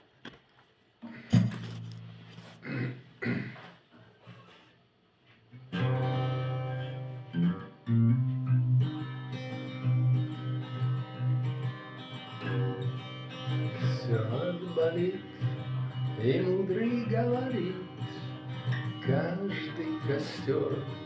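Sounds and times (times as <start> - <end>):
guitar playing chords: 5.7 - 21.0.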